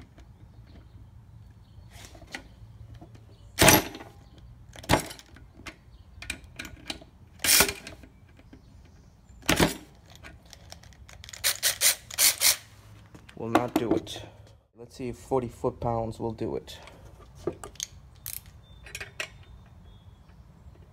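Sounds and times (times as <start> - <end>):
cordless ratchet bursts: 11.1 - 12.7.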